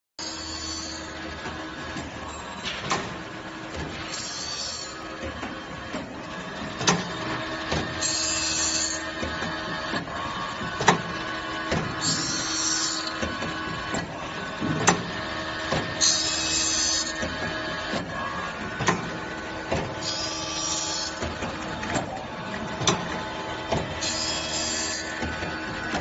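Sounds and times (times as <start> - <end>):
machine hum: 0.2 - 26.0
sharp clicks and knocks: 5.2 - 8.0, 9.2 - 11.1, 11.7 - 12.0, 13.1 - 15.1, 17.1 - 20.0, 21.1 - 24.0, 25.0 - 26.0.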